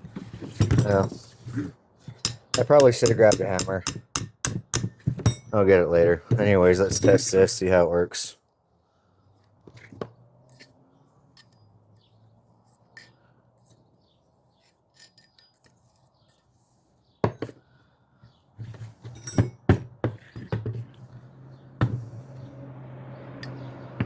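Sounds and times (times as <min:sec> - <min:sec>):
metal tool parts clinking: 0:00.5 - 0:01.2, 0:02.2 - 0:05.6, 0:06.9 - 0:07.3, 0:10.5 - 0:11.8, 0:14.8 - 0:16.2, 0:19.0 - 0:19.6.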